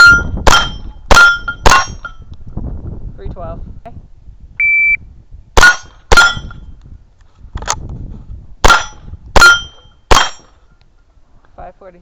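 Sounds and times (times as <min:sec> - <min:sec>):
steel targets ringing: 0:00.0 - 0:02.3, 0:05.6 - 0:06.6, 0:08.7 - 0:10.6
shot timer beep: 0:04.6 - 0:05.0
rifle shots: 0:08.6 - 0:10.5.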